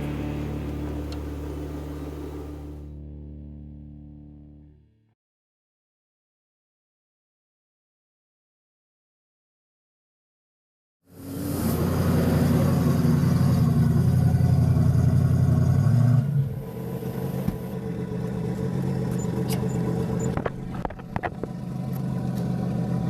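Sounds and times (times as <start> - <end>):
car engine idling: 0.0 - 2.9, 11.9 - 23.0.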